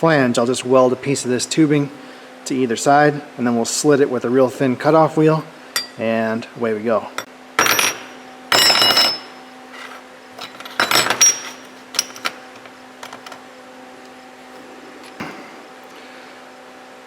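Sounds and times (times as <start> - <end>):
steady hum: 5.4 - 13.4
steel parts clanking: 7.6 - 13.4.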